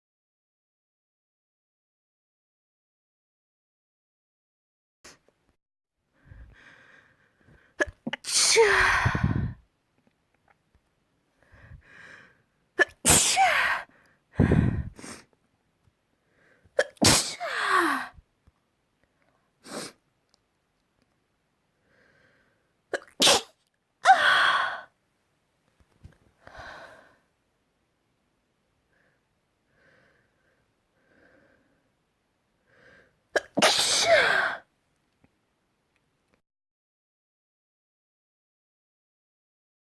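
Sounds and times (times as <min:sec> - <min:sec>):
quiet breaths: 0:06.1 - 0:07.8, 0:11.2 - 0:12.8, 0:13.8 - 0:16.8, 0:19.0 - 0:20.1, 0:21.6 - 0:22.9, 0:26.1 - 0:27.4, 0:28.7 - 0:33.3
person sneezing: 0:07.8 - 0:09.6, 0:12.8 - 0:15.3, 0:16.8 - 0:18.2, 0:22.9 - 0:24.9, 0:33.4 - 0:34.7.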